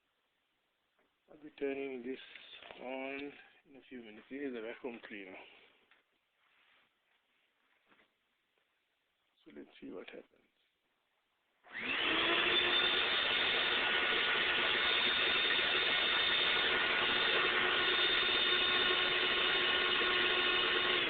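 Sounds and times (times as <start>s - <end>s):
vacuum cleaner motor whining: 11.7s - 21.0s.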